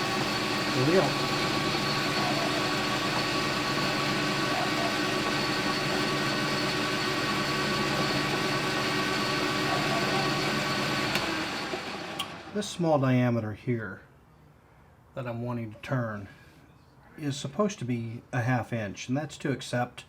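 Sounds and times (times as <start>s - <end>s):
metal lathe running: 0.0s - 12.6s.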